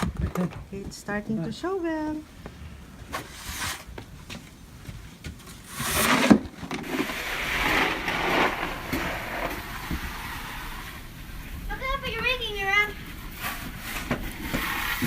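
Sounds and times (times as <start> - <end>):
snow shovel scraping snow: 3.1 - 4.0, 5.5 - 11.0, 13.3 - 15.0.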